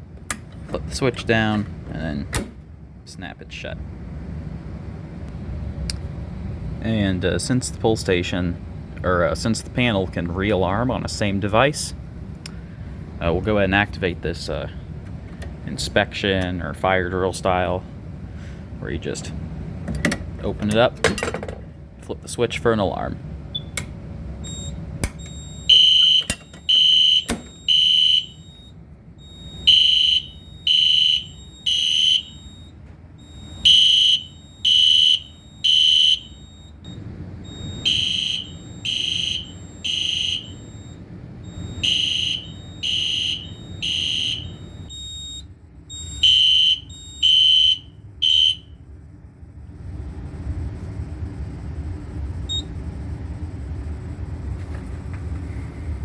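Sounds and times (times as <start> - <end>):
fire alarm horn blasts: 24.4 - 49.8
clicks: 25.0 - 25.4, 26.0 - 27.6.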